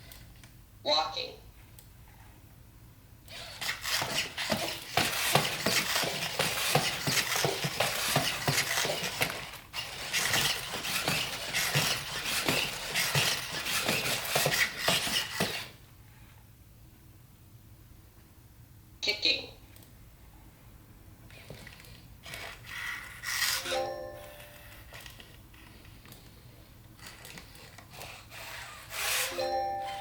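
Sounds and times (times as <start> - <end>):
motors whirring: 3.3 - 15.7, 21.3 - 26.4, 27.0 - 30.0
plastic feet tapping: 3.3 - 15.7, 24.2 - 30.0.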